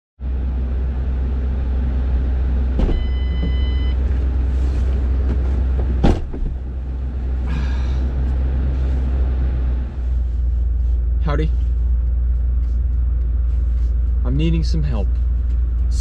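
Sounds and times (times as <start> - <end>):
car engine rumble: 0.2 - 16.0
short electronic beep: 2.9 - 4.0.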